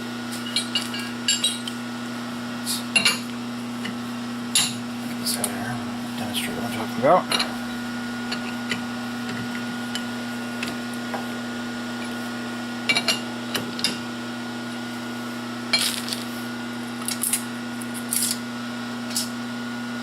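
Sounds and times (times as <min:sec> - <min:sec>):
steady machine hum: 0:00.0 - 0:20.0
metal pieces clinking: 0:15.8 - 0:16.3.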